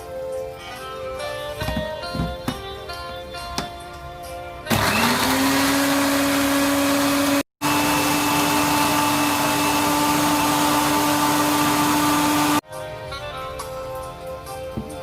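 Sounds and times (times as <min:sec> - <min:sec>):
blender motor whining: 0:04.7 - 0:12.6.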